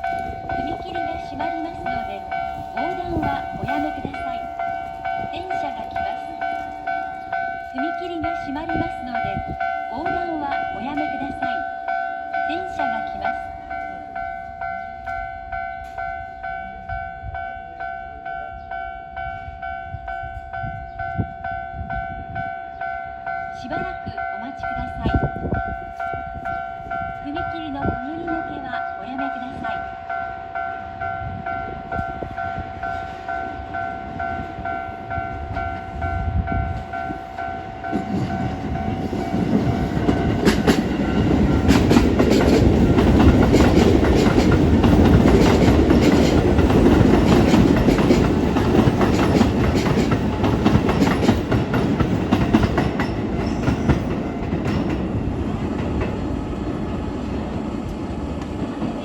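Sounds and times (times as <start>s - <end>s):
train wheels clacking on rails: 0.0s - 16.2s, 23.7s - 59.0s
level crossing bell ringing: 0.0s - 36.3s
electric train passing: 0.0s - 59.0s.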